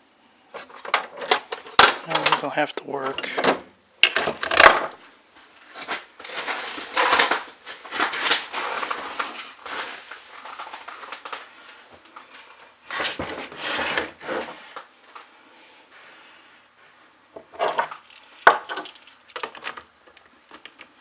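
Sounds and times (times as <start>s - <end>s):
scraping and rustling: 5.5s - 11.5s, 12.3s - 14.8s
metallic and plastic clinks: 18.0s - 19.7s.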